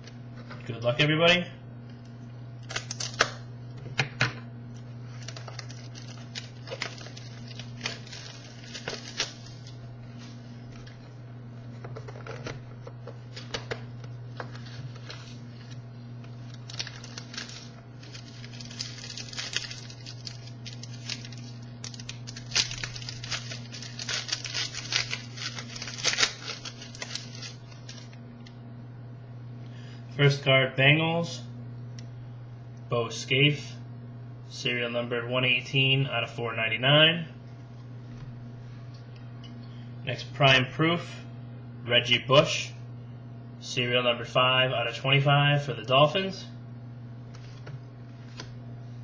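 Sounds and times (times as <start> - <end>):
steady low hum: 0.0 - 49.0
packaging tearing and crinkling: 2.6 - 3.4, 5.0 - 10.9, 14.4 - 28.2
cards handled: 5.0 - 11.0, 11.7 - 28.1, 47.3 - 48.6.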